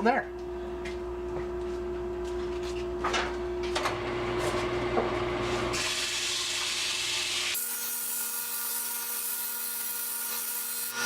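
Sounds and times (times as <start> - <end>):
wood lathe humming: 5.7 - 11.0.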